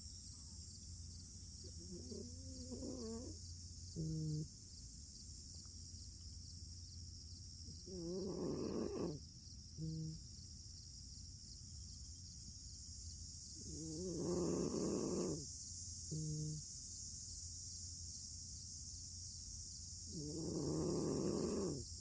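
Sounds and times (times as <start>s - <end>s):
fox snoring: 1.7s - 4.5s, 7.8s - 9.2s, 13.6s - 15.4s, 16.1s - 16.6s, 20.1s - 21.9s.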